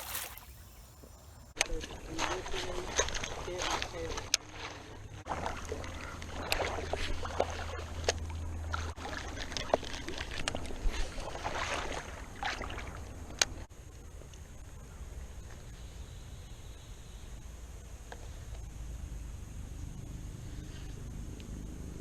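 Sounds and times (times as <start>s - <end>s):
water splashing as someone wades: 0.0s - 1.2s, 5.3s - 13.3s.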